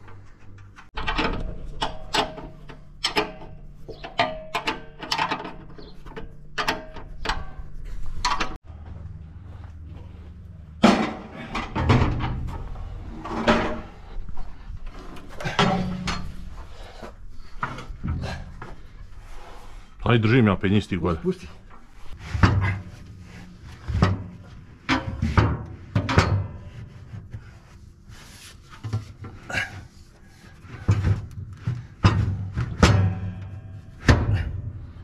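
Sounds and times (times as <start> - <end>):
steady low hum: 0.0 - 35.0
metal tools clanking and scraping: 0.1 - 8.6, 10.8 - 14.2, 14.9 - 19.6.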